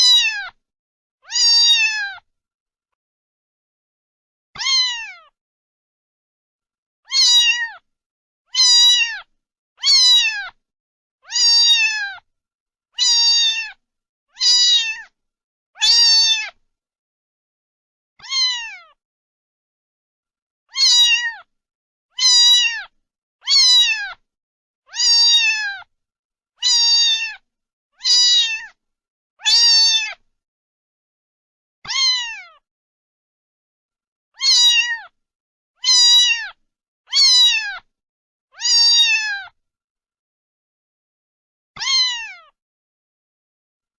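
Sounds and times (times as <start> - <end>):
cat meowing: 0.0 - 0.6, 1.2 - 2.2, 4.6 - 5.3, 7.1 - 7.8, 8.5 - 10.6, 11.2 - 12.2, 13.0 - 13.8, 14.4 - 15.1, 15.8 - 16.6, 18.2 - 19.0, 20.7 - 21.5, 22.2 - 24.2, 24.9 - 25.9, 26.6 - 27.4, 28.0 - 28.8, 29.4 - 30.2, 31.9 - 32.6, 34.4 - 35.2, 35.8 - 37.9, 38.6 - 39.6, 41.8 - 42.6.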